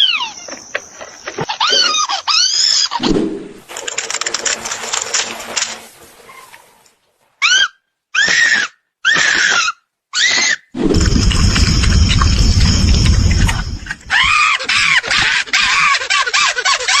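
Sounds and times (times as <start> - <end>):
high-pitched screams: 7.4 - 17.0
rough distorted rumbling: 10.8 - 14.2.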